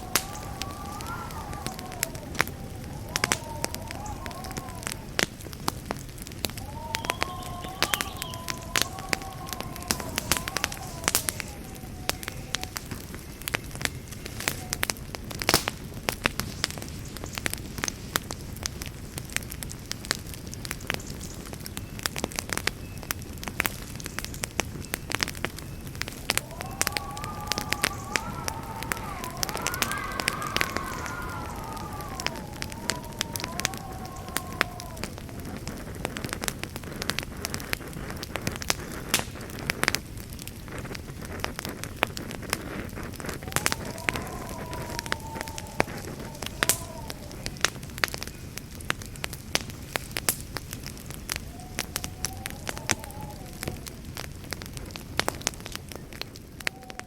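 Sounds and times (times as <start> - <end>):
wavering whistling tone: 0.0 - 5.2, 6.5 - 14.8, 25.8 - 36.4, 43.3 - 47.8
campfire crackling and popping: 0.0 - 57.0
low rumble of flames: 0.0 - 57.0.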